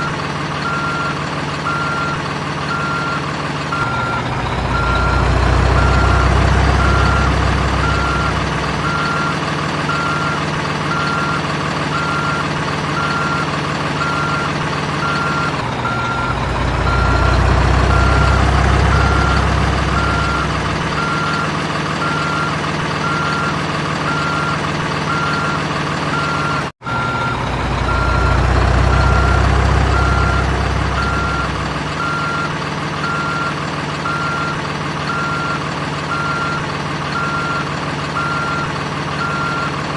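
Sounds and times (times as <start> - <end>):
simulated engine rumble: 0.0 - 39.9
electronic reversing beeps: 1.7 - 9.3, 14.0 - 23.5, 24.1 - 36.6.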